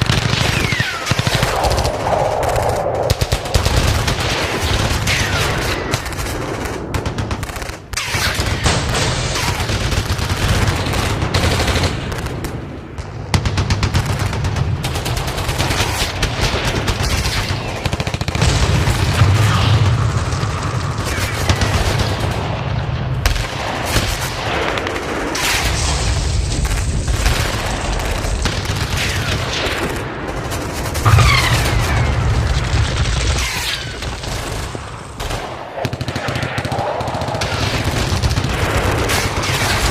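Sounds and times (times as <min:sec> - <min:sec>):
machine-gun fire: 0:00.0 - 0:39.9
heavy low rumble: 0:01.3 - 0:05.1.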